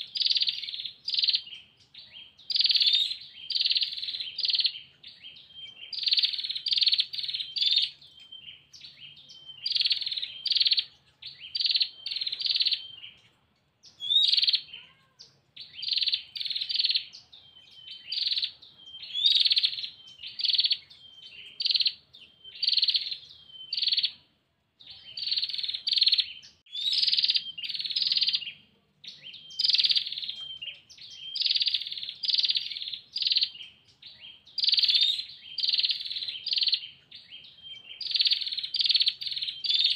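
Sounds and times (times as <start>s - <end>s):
bird buzzy trilling call: 0.0s - 1.7s, 2.4s - 13.2s, 13.9s - 17.2s.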